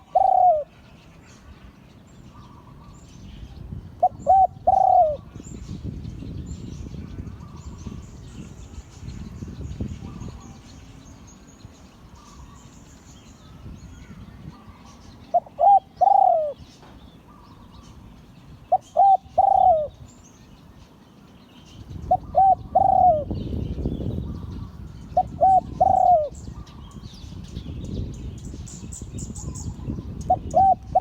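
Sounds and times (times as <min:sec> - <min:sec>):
dove cooing: 0:00.0 - 0:00.8, 0:04.0 - 0:05.6, 0:14.5 - 0:17.9, 0:18.7 - 0:20.0, 0:22.0 - 0:23.5, 0:24.2 - 0:27.0, 0:29.4 - 0:31.0.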